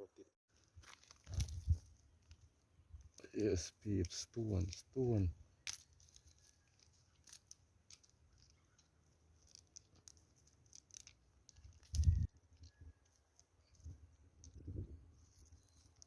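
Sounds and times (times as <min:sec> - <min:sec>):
small stones clicking: 0:04.0 - 0:16.0.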